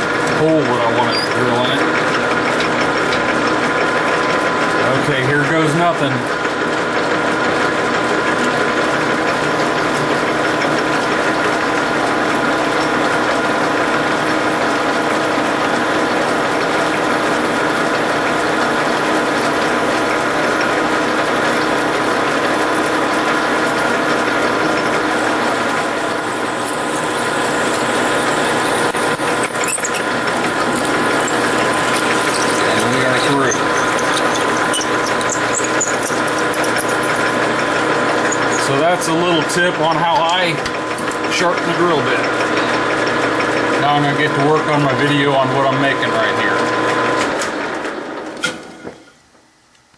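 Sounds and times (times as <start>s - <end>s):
drill bit boring into workpiece: 0.0s - 47.5s
lathe running: 0.0s - 49.1s.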